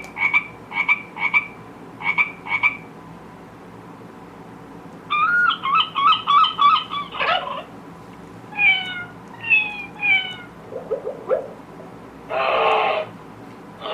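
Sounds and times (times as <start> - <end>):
short falling animal calls: 12.3 - 13.2.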